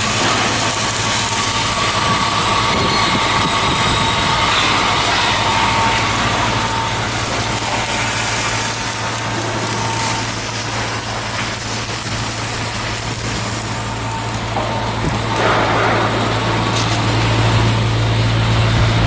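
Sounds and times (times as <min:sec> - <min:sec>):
heavy machinery running: 0:00.0 - 0:19.0.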